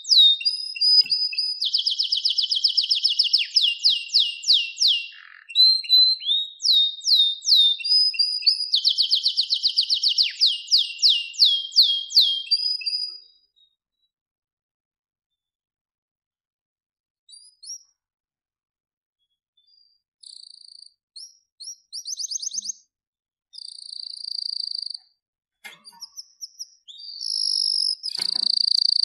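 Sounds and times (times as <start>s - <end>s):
songbird trilling: 0.0s - 13.1s
bird chips and whistles: 0.0s - 13.2s, 17.3s - 17.9s, 21.2s - 22.8s, 25.7s - 29.0s.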